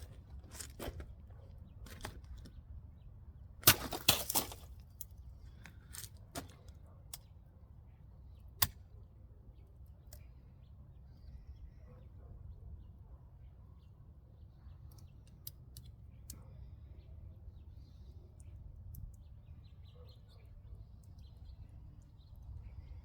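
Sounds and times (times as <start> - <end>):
rough scrape: 3.6 - 4.8.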